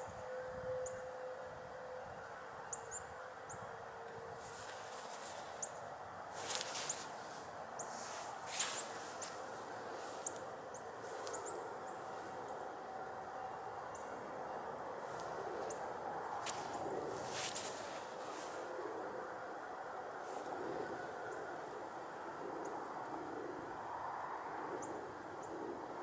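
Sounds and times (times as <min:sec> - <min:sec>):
distant sirens: 0:00.0 - 0:26.0
rustling: 0:04.4 - 0:11.5, 0:16.3 - 0:18.7
bird chirping: 0:06.4 - 0:12.7.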